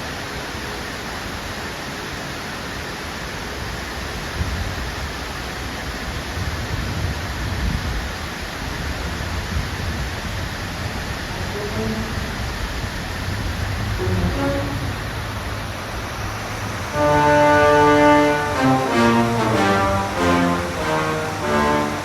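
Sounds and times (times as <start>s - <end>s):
waterfall roaring: 8.1s - 22.0s.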